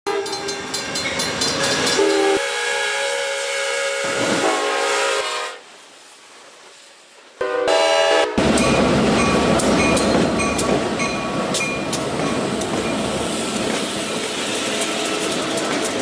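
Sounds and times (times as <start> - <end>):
train horn chord: 0.1 - 0.6, 1.9 - 5.6, 7.4 - 8.6
rail clicks: 0.1 - 2.4, 8.4 - 16.0
train passing close by: 0.1 - 16.0.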